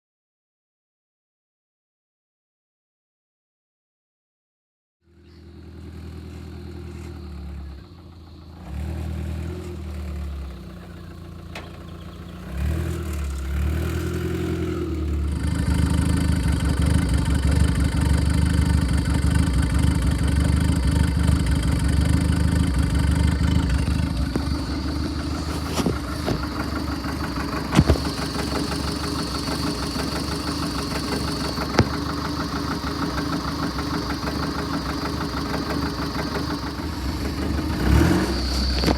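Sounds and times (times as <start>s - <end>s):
tractor engine revving: 5.6s - 38.9s.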